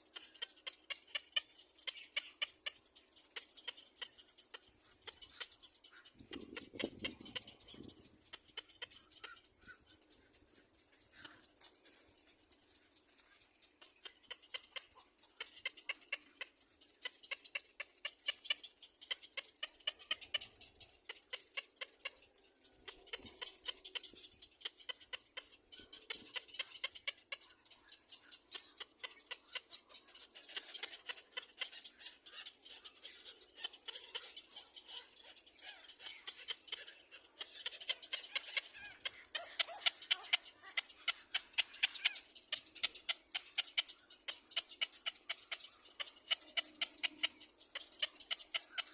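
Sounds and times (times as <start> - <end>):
baby bird begging chirps: 30.4 - 48.9.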